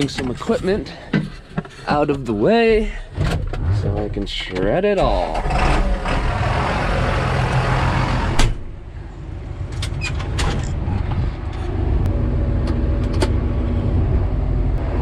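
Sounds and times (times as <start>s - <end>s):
engine running steadily: 2.6s - 15.0s
door slamming shut: 8.3s - 8.7s.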